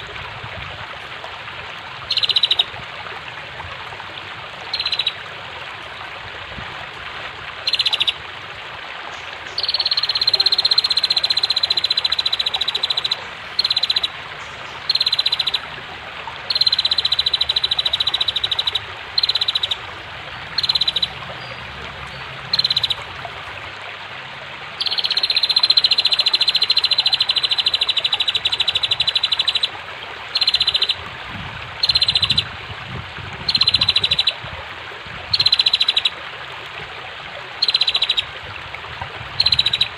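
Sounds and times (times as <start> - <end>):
flowing water: 0.0 - 39.9
bird ticking trills: 2.1 - 2.7, 4.7 - 5.2, 7.6 - 8.2, 9.5 - 15.7, 16.5 - 23.1, 24.8 - 29.7, 30.3 - 31.0, 31.8 - 32.5, 33.5 - 34.4, 35.3 - 36.1, 37.6 - 38.3, 39.4 - 39.9.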